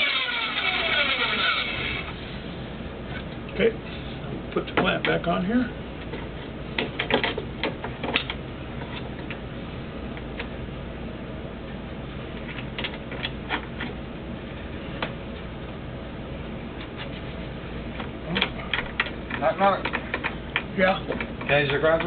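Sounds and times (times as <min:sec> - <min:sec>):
parts clicking and tapping: 0:18.0 - 0:22.0.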